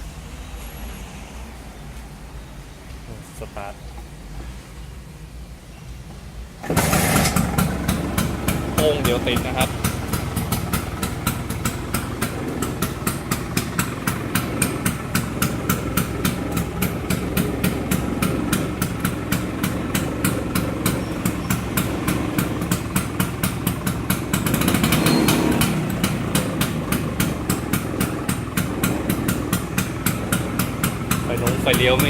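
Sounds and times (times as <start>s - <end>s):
scooter engine idling and revving: 6.6s - 32.0s.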